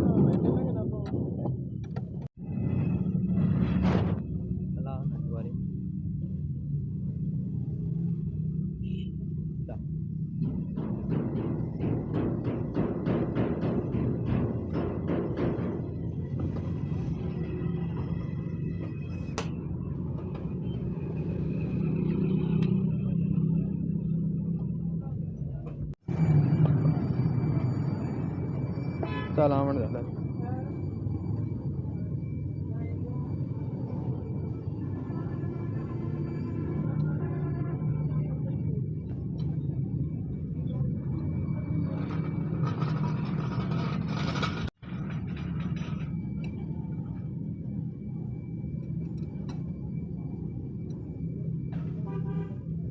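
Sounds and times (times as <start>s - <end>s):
car engine and road noise: 0.0s - 52.9s
car road noise rumble: 29.9s - 52.9s.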